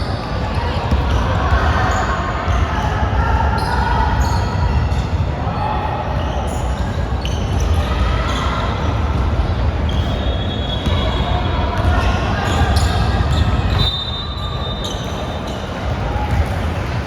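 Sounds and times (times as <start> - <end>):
players' voices: 0.0 - 17.0
basketball bouncing on court: 0.3 - 2.6, 9.0 - 13.8, 15.0 - 16.9.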